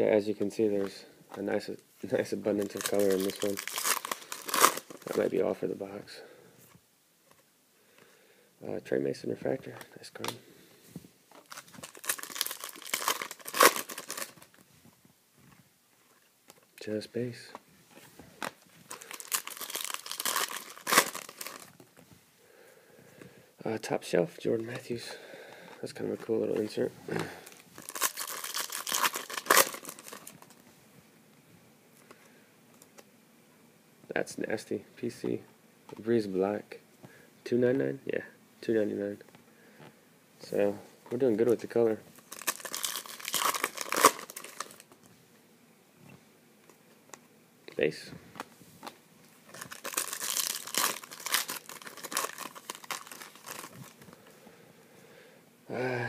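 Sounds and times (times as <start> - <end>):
foil wrapper crinkling: 2.5 - 5.4, 11.3 - 14.6, 18.4 - 21.8, 27.4 - 30.6, 42.2 - 45.1, 48.8 - 54.2.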